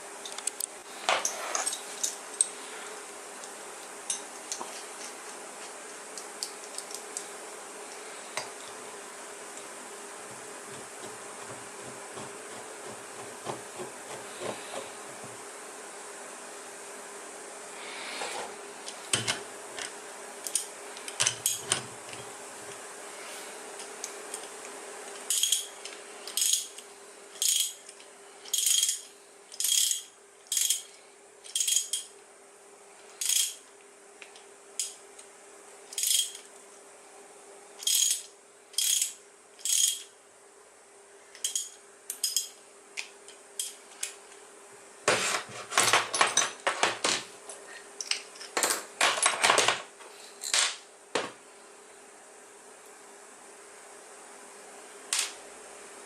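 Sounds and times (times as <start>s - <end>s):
faint steady hum: 0.0s - 56.0s
metal tools clinking: 1.2s - 2.5s, 25.3s - 26.8s.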